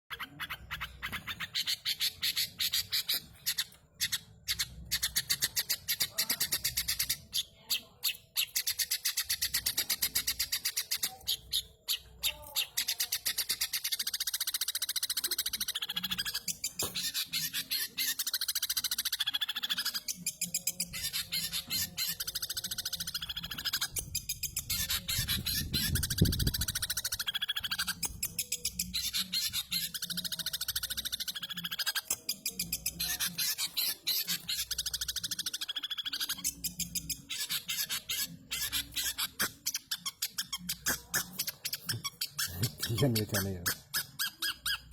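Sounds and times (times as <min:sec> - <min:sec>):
bird singing high chirps: 0:00.0 - 0:44.9.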